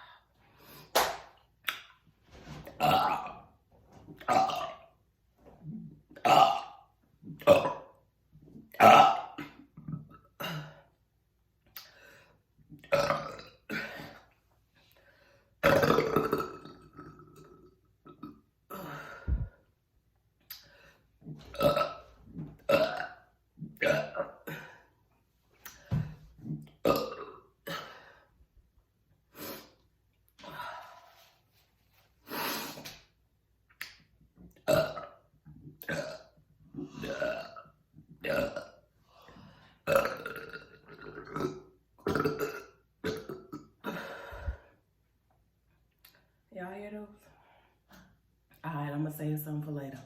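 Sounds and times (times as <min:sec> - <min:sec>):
woman burping: 0:02.8 - 0:03.4, 0:04.2 - 0:04.9, 0:06.2 - 0:08.0, 0:08.7 - 0:10.9, 0:12.8 - 0:14.3, 0:15.6 - 0:19.6, 0:21.5 - 0:22.0, 0:22.6 - 0:24.9, 0:26.4 - 0:28.2, 0:34.6 - 0:35.2, 0:35.8 - 0:38.8, 0:39.8 - 0:44.6.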